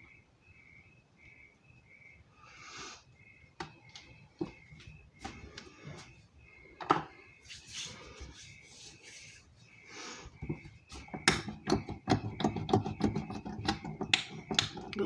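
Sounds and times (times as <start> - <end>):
latex gloves rubbing and squeaking: 7.4 - 9.9
sticky clicks of lotion: 10.5 - 15.0.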